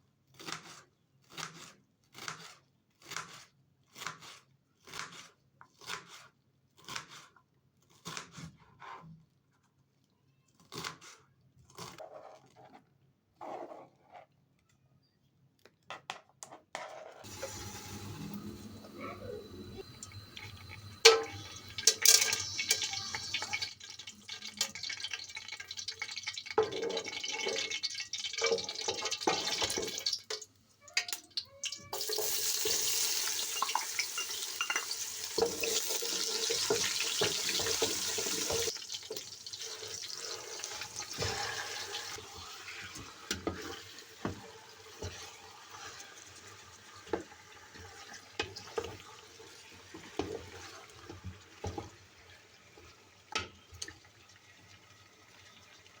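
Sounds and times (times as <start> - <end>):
tap water running into sink: 17.2 - 30.4, 31.0 - 52.0.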